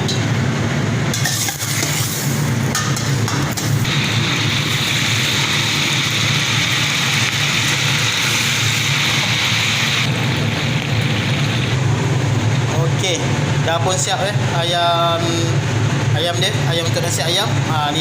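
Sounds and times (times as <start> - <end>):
steady low hum: 0.0 - 18.0
chicken deep-frying in oil: 1.2 - 12.2.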